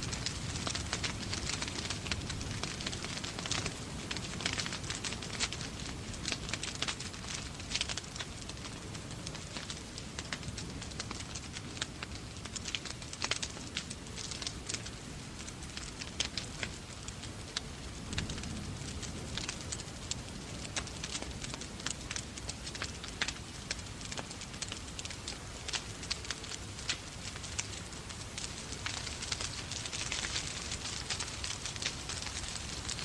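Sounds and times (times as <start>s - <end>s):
rain hissing: 0.0s - 33.0s
wood fire crackling and popping: 0.0s - 33.0s.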